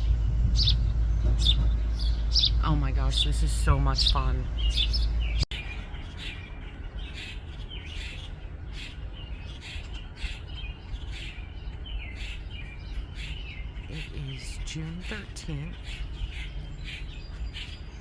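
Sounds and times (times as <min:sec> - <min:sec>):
loud low rumble: 0:00.0 - 0:07.0
low background rumble: 0:00.0 - 0:18.0
sparrows chirping: 0:00.0 - 0:18.0.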